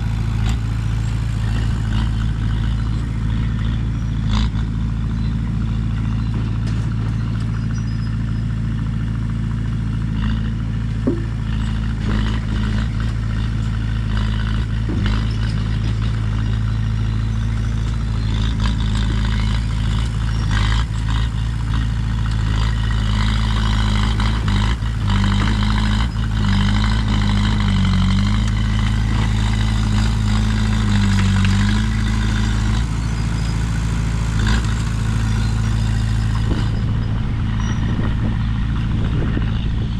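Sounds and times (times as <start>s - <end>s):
bulldozer diesel engine running: 0.0s - 39.9s
metal clanks and knocks: 11.0s - 12.6s.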